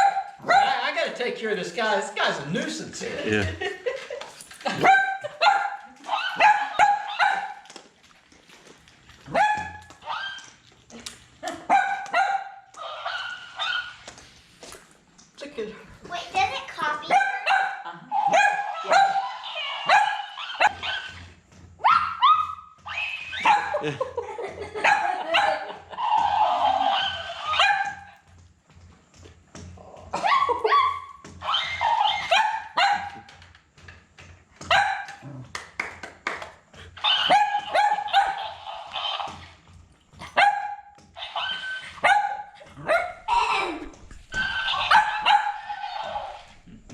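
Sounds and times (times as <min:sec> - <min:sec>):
puppies yipping and barking: 0:04.6 - 0:07.8, 0:09.2 - 0:10.8, 0:11.4 - 0:14.1, 0:17.1 - 0:23.9, 0:24.5 - 0:28.3, 0:30.2 - 0:33.3, 0:36.9 - 0:46.6.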